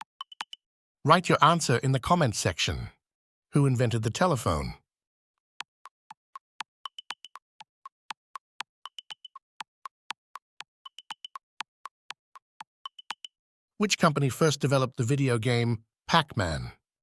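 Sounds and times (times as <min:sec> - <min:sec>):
countdown timer ticking: 0:00.0 - 0:00.6, 0:05.6 - 0:13.3.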